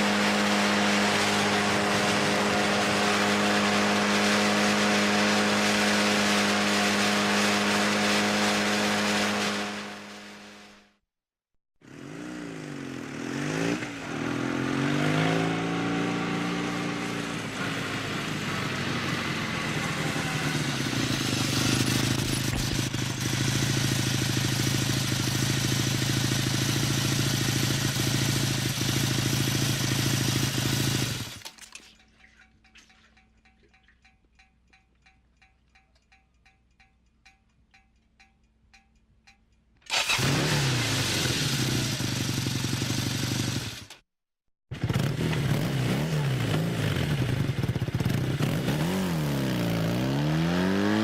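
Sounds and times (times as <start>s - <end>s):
motorcycle engine revving: 0.0s - 11.0s, 11.8s - 31.4s, 39.9s - 44.0s, 44.7s - 51.0s
faint rapid ticking: 32.0s - 39.7s.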